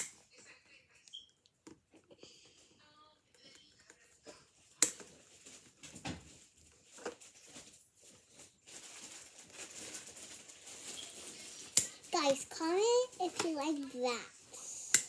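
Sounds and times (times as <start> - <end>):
clothes rustling: 5.0 - 14.6.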